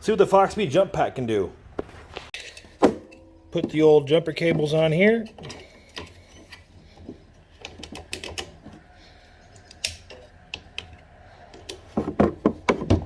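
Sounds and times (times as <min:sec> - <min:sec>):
metal clamps clicking: 0:07.6 - 0:08.8
knocks: 0:11.9 - 0:13.0.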